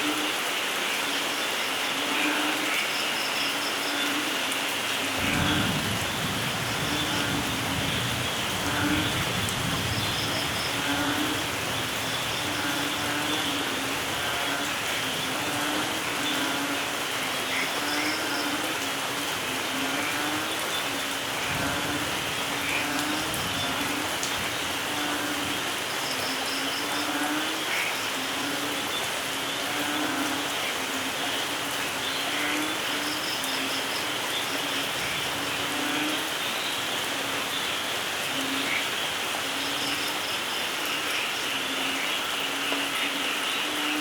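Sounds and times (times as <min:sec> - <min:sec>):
steady rain: 0:00.0 - 0:44.0
rolling thunder: 0:05.2 - 0:11.9.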